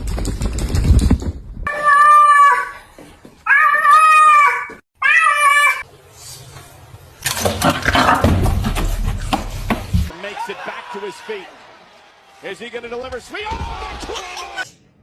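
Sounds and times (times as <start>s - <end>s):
cat meowing: 3.5s - 5.8s.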